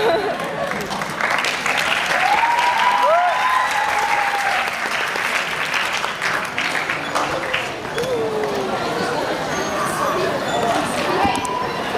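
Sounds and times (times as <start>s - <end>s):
audience applauding: 0.4s - 8.8s
whoops and cheers: 2.1s - 4.8s.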